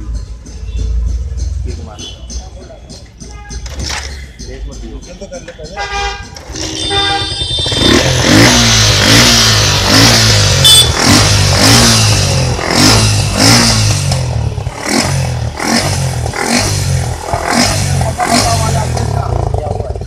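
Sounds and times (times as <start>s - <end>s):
motorcycle engine revving: 6.3s - 20.0s.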